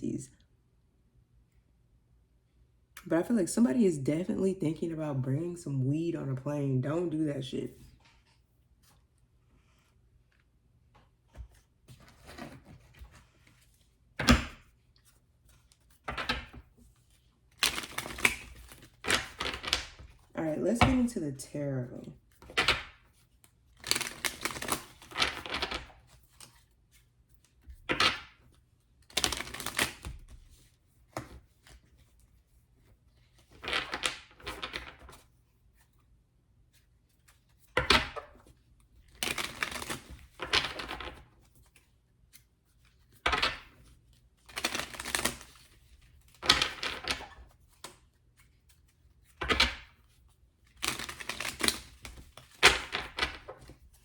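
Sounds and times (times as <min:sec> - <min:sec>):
cards being shuffled: 0:11.2 - 0:21.2, 0:22.2 - 0:36.0, 0:36.7 - 0:54.0.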